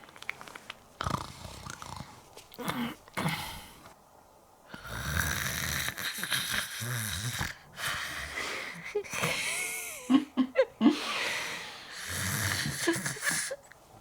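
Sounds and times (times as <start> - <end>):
loud comic snore: 4.8 - 8.4, 11.9 - 13.6.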